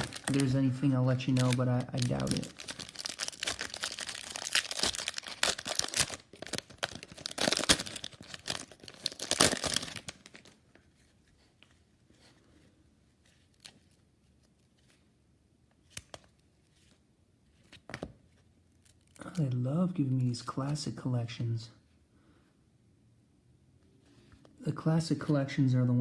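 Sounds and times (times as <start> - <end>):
card pack wrapper tearing: 0.0 - 10.6.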